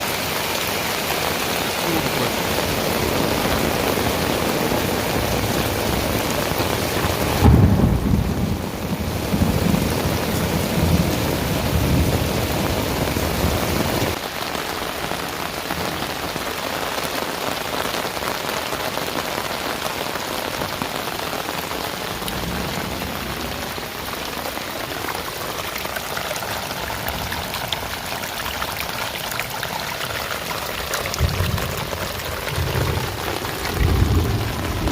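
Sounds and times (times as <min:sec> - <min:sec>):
heavy rain falling: 0:00.0 - 0:34.9
thunder rumbling: 0:02.1 - 0:14.2, 0:31.0 - 0:34.9.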